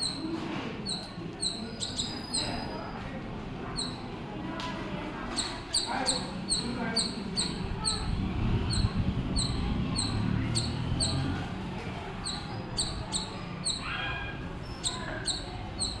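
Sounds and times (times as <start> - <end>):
squirrel chirping: 0.0 - 2.8, 3.8 - 4.0, 5.3 - 8.1, 8.7 - 11.3, 12.2 - 16.0.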